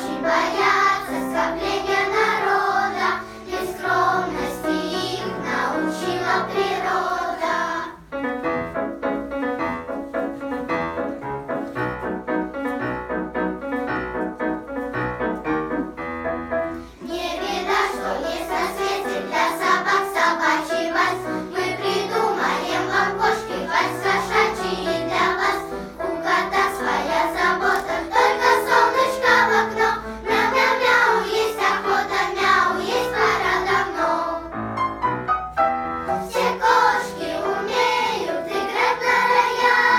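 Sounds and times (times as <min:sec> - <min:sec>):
children's choir singing: 0:00.0 - 0:08.2, 0:16.9 - 0:34.8, 0:36.0 - 0:39.9
instrumental accompaniment: 0:00.0 - 0:39.9.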